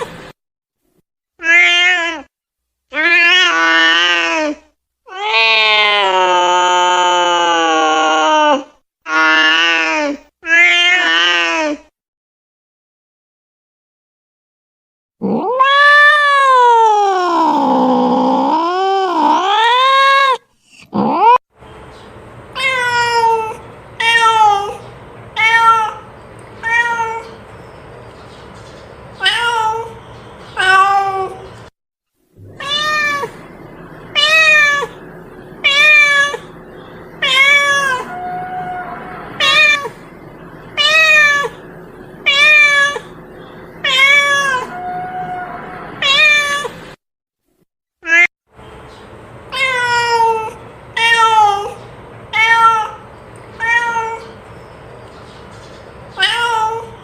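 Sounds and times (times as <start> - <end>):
cat meowing: 1.4 - 2.3, 2.9 - 11.8, 15.2 - 20.4, 22.5 - 27.4, 29.2 - 30.0, 30.6 - 31.5, 32.4 - 33.5, 34.1 - 36.6, 37.2 - 40.0, 40.6 - 41.6, 42.2 - 43.2, 43.8 - 46.8, 48.0 - 48.3, 49.5 - 53.0, 53.6 - 54.4, 56.2 - 57.0.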